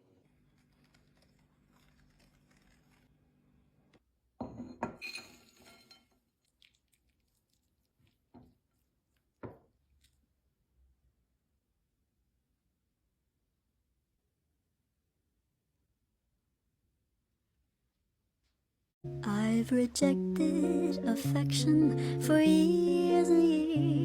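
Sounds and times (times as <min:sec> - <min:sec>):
glass and utensils clinking: 0:04.4 - 0:06.2.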